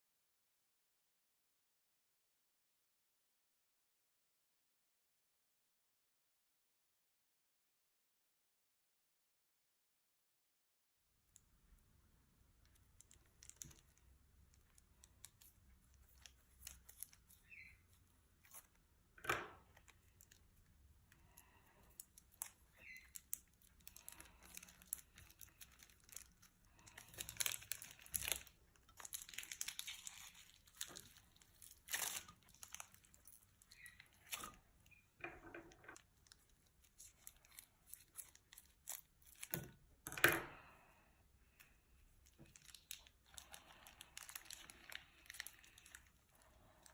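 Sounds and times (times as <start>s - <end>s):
plastic bags crinkling: 19.7s - 34.9s, 35.7s - 39.7s, 42.2s - 46.9s
slime sticky crackling: 19.7s - 35.0s, 35.9s - 39.6s, 42.2s - 46.9s.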